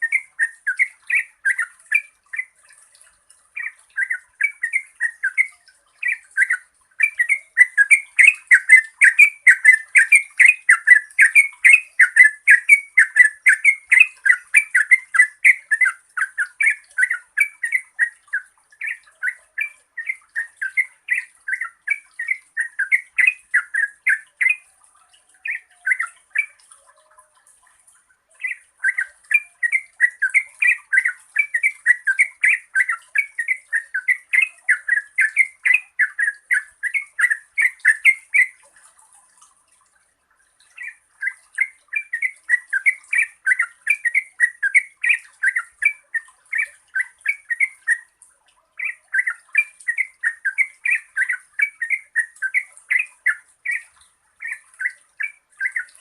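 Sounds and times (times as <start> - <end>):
bird singing chattering notes: 0.0 - 2.6, 3.6 - 24.6, 28.4 - 38.6, 40.8 - 48.1, 48.8 - 56.0.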